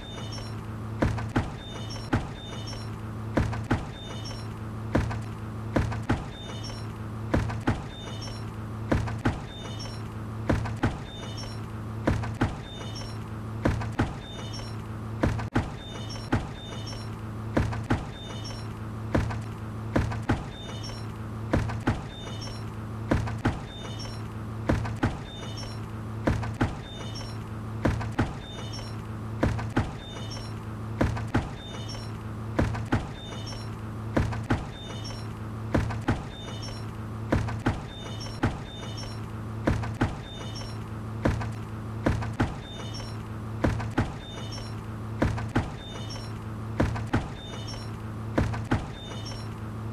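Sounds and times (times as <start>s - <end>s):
short high squeak: 0.0s - 0.6s, 1.6s - 3.0s, 3.9s - 4.6s, 6.3s - 6.9s, 7.8s - 8.5s, 9.4s - 10.1s, 11.0s - 11.7s, 12.6s - 13.2s, 14.2s - 14.8s, 15.8s - 17.2s, 18.1s - 18.7s, 20.5s - 21.1s, 22.0s - 22.7s, 23.6s - 24.3s, 25.2s - 25.9s, 26.8s - 27.4s, 28.4s - 29.0s, 30.0s - 30.6s, 31.5s - 32.2s, 33.1s - 33.8s, 34.7s - 35.4s, 36.3s - 36.9s, 37.8s - 39.3s, 40.2s - 40.8s, 42.6s - 43.2s, 44.2s - 44.8s, 45.7s - 46.4s, 47.3s - 48.0s, 48.9s - 49.6s
steady low hum: 0.0s - 49.9s.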